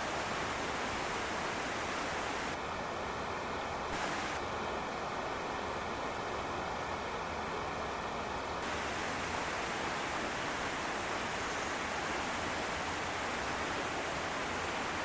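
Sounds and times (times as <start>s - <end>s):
waterfall rushing: 4.0s - 4.4s, 8.6s - 15.0s.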